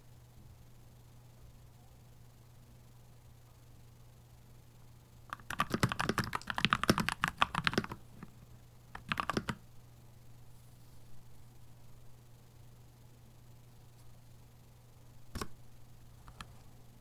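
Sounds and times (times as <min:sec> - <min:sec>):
mechanical keyboard typing: 0:05.3 - 0:08.4, 0:09.0 - 0:09.6, 0:15.3 - 0:15.6, 0:16.2 - 0:16.6.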